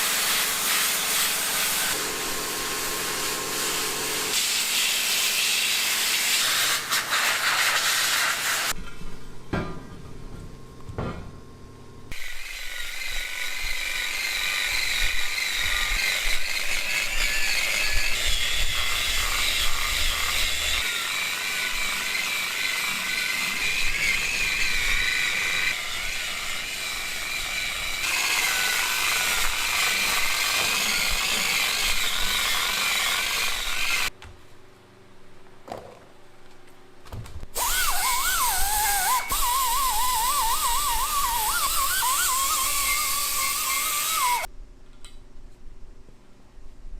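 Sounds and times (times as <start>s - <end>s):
power tool whining: 12.1s - 34.1s, 37.6s - 44.5s.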